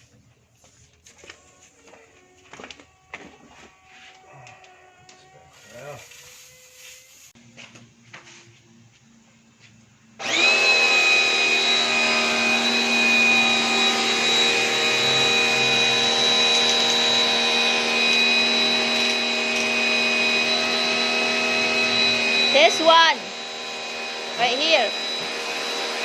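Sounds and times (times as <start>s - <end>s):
pressure washer running: 10.2s - 26.0s.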